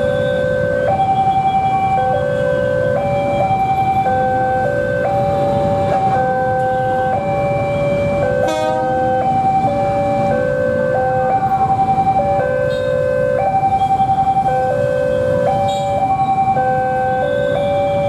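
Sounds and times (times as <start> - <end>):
electronic emergency siren: 0.0 - 18.0.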